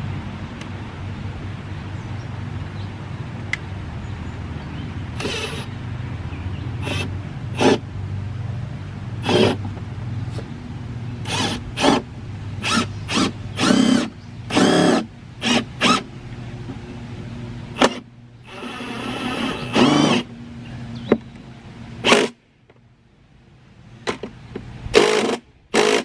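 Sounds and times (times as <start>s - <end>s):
impact driver whirring: 5.2s - 5.7s, 6.8s - 7.8s, 9.2s - 9.7s, 11.2s - 16.1s, 17.8s - 20.3s, 25.0s - 26.0s.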